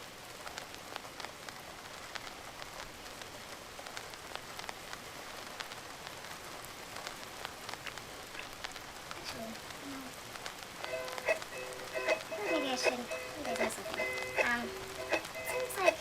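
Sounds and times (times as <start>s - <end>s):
rain hiss: 0.0s - 16.0s
sharp crackles and ticks: 0.0s - 16.0s.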